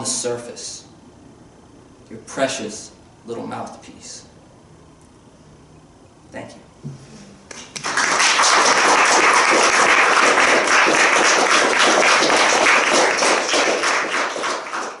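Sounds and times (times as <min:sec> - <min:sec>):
audience applauding: 0:07.5 - 0:15.0.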